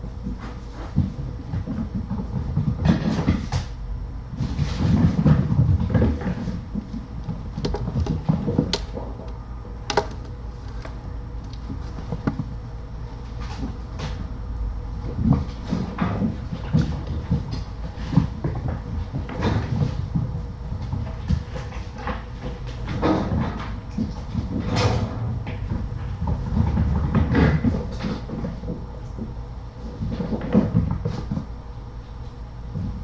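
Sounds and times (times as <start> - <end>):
low steady hum: 0.0 - 33.0
objects knocking and clicking: 6.8 - 12.5.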